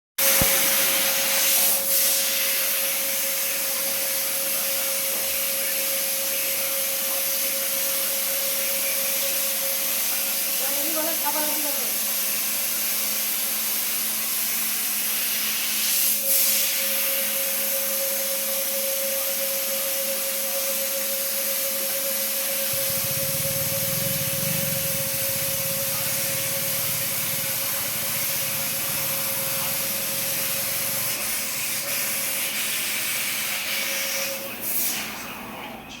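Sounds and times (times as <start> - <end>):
laser cutter hissing: 0.3 - 35.2
steady machine whine: 17.2 - 31.6
low rumble: 22.8 - 28.1.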